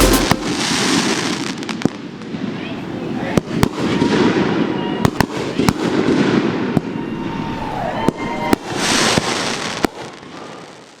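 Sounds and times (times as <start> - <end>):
fireworks popping and crackling: 0.0 - 2.0.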